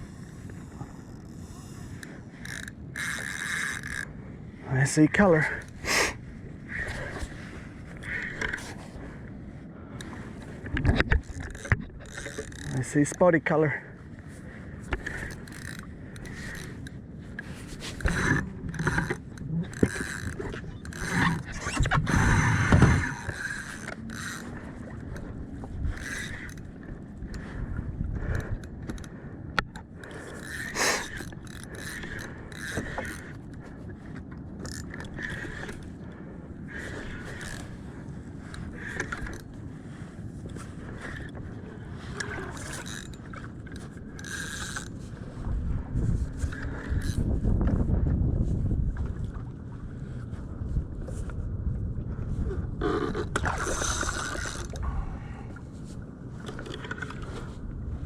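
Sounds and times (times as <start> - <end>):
fishing reel winding: 0.0 - 4.1, 11.2 - 13.3, 15.0 - 16.9, 17.8 - 26.7, 30.0 - 33.6, 34.6 - 35.9, 36.8 - 37.8, 42.1 - 45.1, 46.4 - 47.3, 53.5 - 54.8
wind noise: 0.0 - 58.0.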